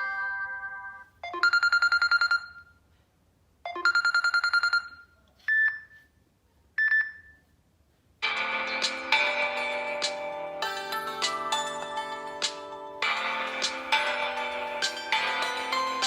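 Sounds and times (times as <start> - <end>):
electronic trilling ringtone: 0.0 - 2.7.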